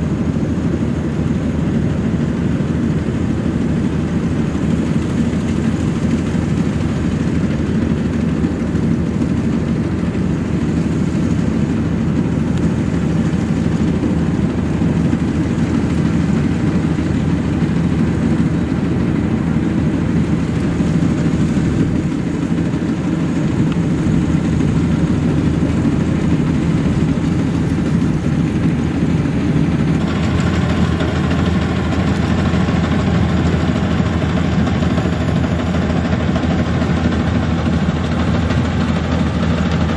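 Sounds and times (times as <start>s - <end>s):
combine harvester engine drone: 0.0s - 39.9s
machinery noise: 12.8s - 39.9s.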